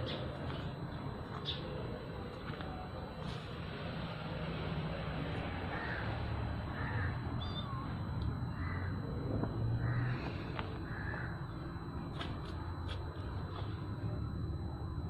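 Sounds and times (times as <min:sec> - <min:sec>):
low hum: 0:00.0 - 0:15.0
bird calling: 0:05.7 - 0:07.9, 0:08.5 - 0:11.6.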